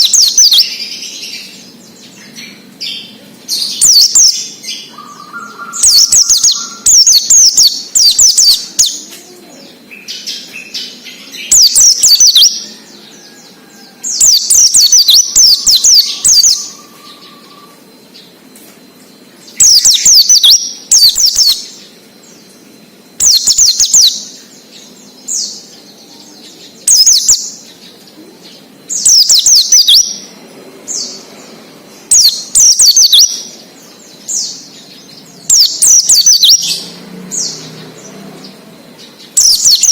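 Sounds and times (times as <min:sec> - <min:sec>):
bird twittering: 0:00.0 - 0:39.9.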